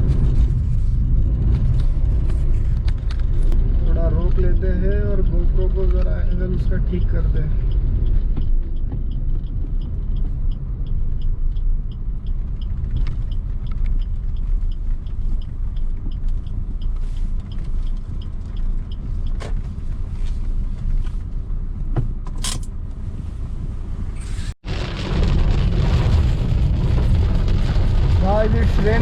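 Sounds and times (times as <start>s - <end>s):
low car engine rumble: 0.0s - 29.0s
indicator relay ticking: 4.5s - 19.4s.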